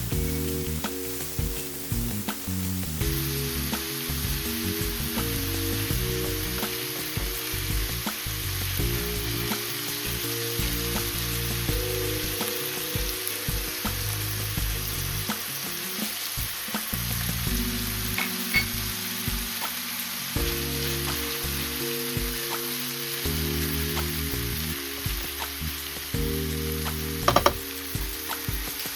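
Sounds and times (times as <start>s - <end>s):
food sizzling in hot oil: 0.0s - 28.9s
soft background music: 0.0s - 28.9s
metallic clink: 27.3s - 27.6s
utensil tapping and scraping: 27.3s - 27.6s.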